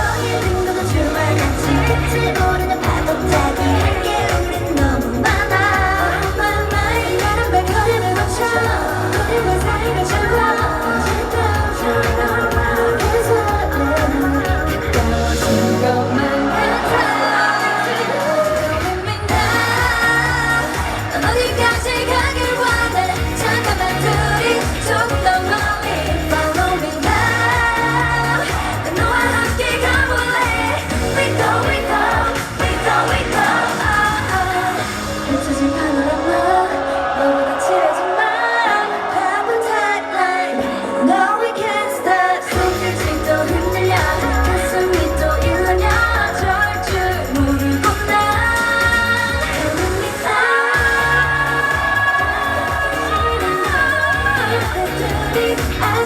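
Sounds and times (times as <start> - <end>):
dance backing track with heavy beat: 0.0 - 56.0
female group singing: 0.0 - 56.0.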